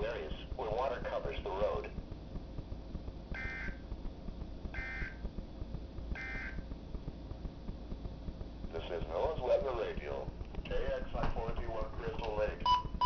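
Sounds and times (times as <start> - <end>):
radio hum and hiss: 0.0 - 13.0
warbling data beeps: 6.2 - 6.6.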